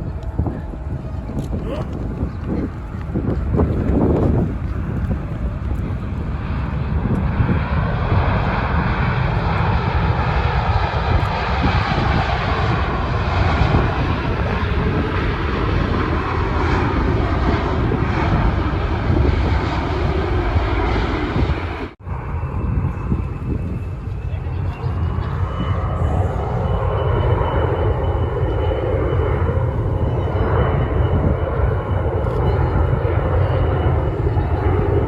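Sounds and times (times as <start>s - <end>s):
airliner engines rumbling: 0.0s - 35.0s.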